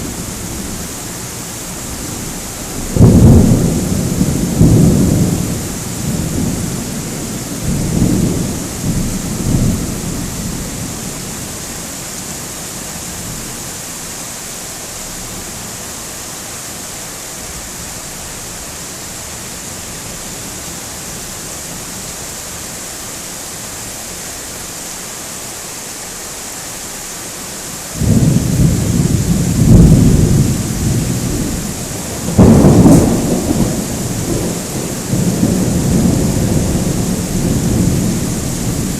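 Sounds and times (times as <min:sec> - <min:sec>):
thunder rumbling: 0:00.0 - 0:11.7, 0:28.0 - 0:38.9
rain hissing: 0:00.0 - 0:38.9.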